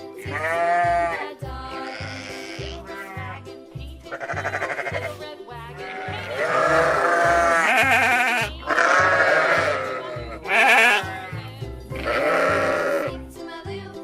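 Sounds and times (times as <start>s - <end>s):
children's music with beat: 0.0s - 14.0s
sheep bleating: 0.2s - 3.4s, 4.1s - 13.2s.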